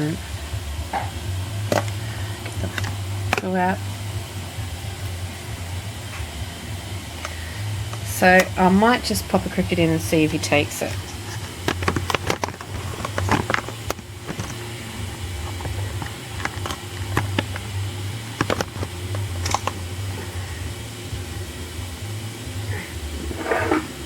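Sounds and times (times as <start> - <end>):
light clicks and taps of handling: 11.4 - 19.8.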